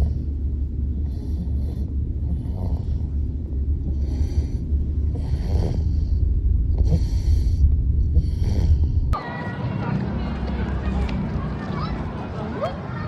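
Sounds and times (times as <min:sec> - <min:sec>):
steady low rumble: 0:00.0 - 0:13.0
baby snoring breaths: 0:01.0 - 0:03.0, 0:03.9 - 0:06.2, 0:06.8 - 0:07.6, 0:08.2 - 0:08.8.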